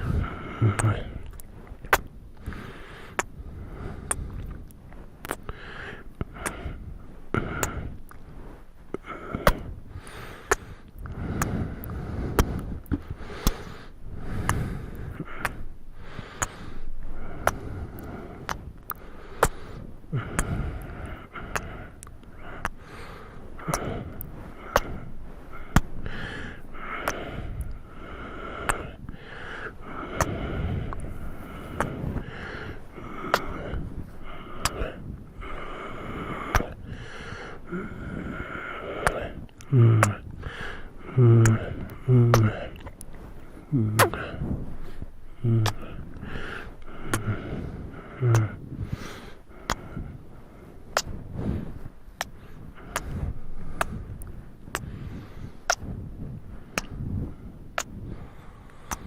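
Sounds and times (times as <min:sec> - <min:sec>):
lip smacks: 0:00.0 - 0:03.4, 0:04.0 - 0:05.6, 0:06.2 - 0:06.8, 0:07.4 - 0:08.3, 0:08.9 - 0:37.9, 0:38.8 - 0:50.0, 0:50.9 - 0:51.3, 0:52.2 - 0:55.9, 0:56.7 - 0:57.0, 0:57.8 - 0:59.0
soft breaths: 0:00.0 - 0:59.0
lip smacks kissing: 0:17.4 - 0:19.6, 0:20.2 - 0:20.6, 0:21.4 - 0:22.8, 0:42.3 - 0:43.1, 0:43.9 - 0:44.2, 0:45.6 - 0:46.0, 0:46.8 - 0:47.3, 0:48.3 - 0:48.6, 0:51.0 - 0:51.2, 0:52.2 - 0:53.2, 0:56.8 - 0:57.0.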